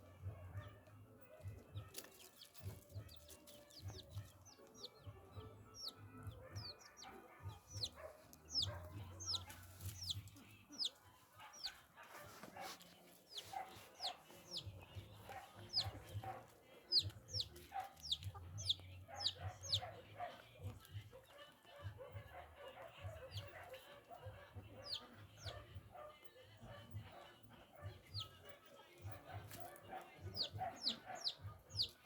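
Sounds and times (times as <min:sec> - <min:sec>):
birds chirping: 0:01.4 - 0:21.4, 0:29.0 - 0:32.0.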